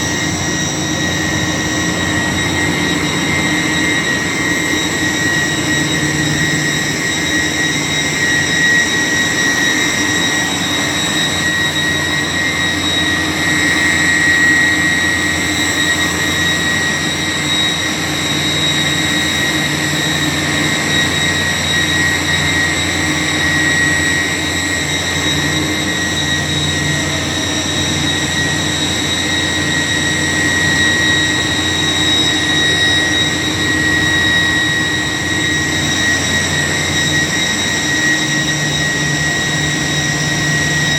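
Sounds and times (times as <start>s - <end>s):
low machine hum: 0.0s - 18.1s
compressor high whine: 0.0s - 40.9s.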